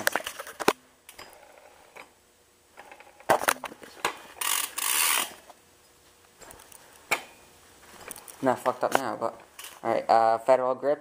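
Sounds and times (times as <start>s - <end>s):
bike freewheel ratcheting buzz: 4.4s - 5.4s.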